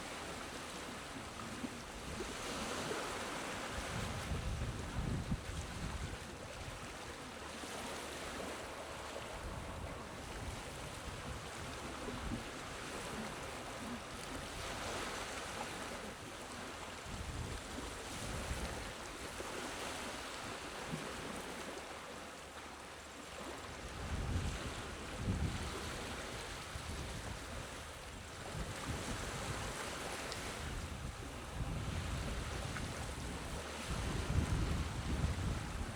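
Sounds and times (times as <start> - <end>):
gentle waves washing onto shore: 0.0 - 35.9.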